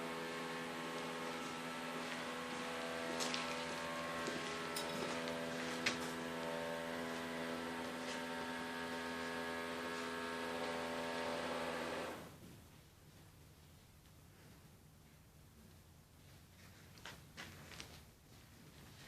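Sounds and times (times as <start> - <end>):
steady machine hum: 0.0 - 12.4.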